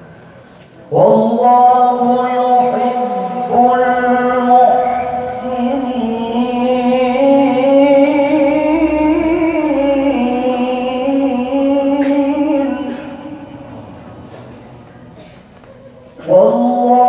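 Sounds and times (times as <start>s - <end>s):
man reciting melodically: 0.0s - 15.3s, 16.1s - 17.0s.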